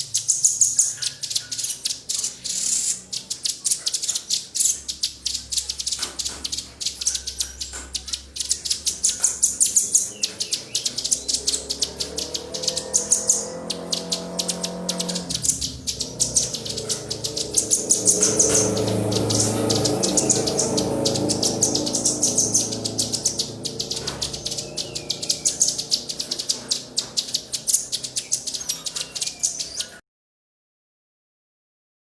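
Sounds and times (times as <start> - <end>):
songbirds chirping: 0.0 - 30.0.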